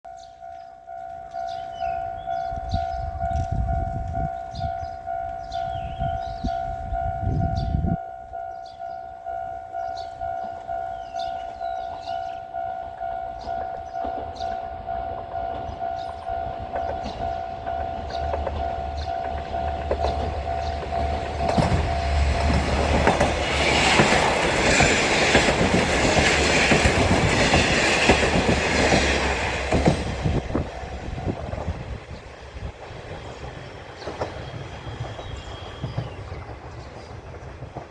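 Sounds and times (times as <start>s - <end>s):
level crossing bell ringing: 0.1s - 23.1s
diesel railcar engine rumble: 0.4s - 37.9s
train wheel noise: 0.9s - 37.9s.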